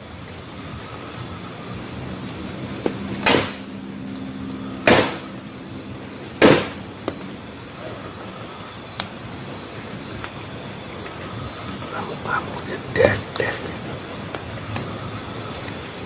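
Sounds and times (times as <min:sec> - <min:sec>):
loud ringing bangs: 0:03.2 - 0:03.8, 0:04.8 - 0:05.4, 0:06.4 - 0:06.9.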